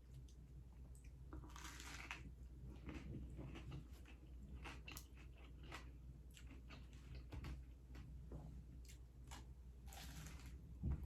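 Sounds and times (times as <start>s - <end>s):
person crunching food: 1.4s - 7.6s, 8.9s - 10.7s.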